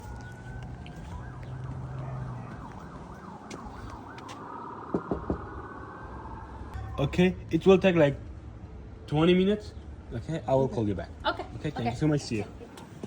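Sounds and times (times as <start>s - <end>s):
emergency vehicle siren: 0.0s - 7.9s.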